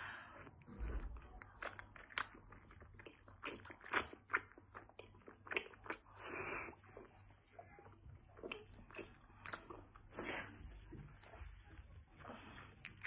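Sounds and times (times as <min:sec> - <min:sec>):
wet chewing and biting: 0:00.4 - 0:10.1.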